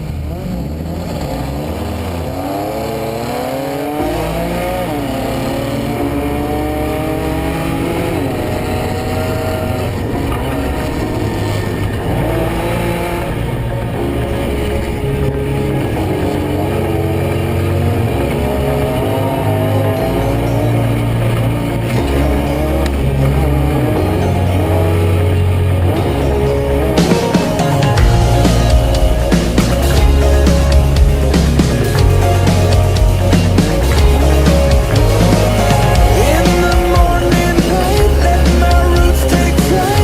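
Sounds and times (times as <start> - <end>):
truck engine accelerating: 0.0 - 40.0
low rumble: 20.0 - 40.0.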